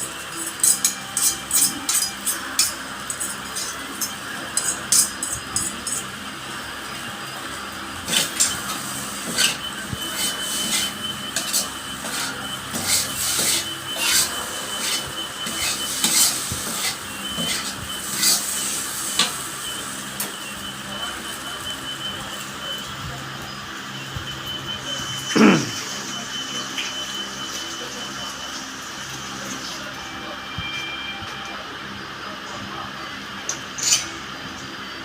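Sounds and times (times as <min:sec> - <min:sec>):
frying hiss: 0:00.0 - 0:30.5
spatula scraping a pan: 0:09.2 - 0:19.3.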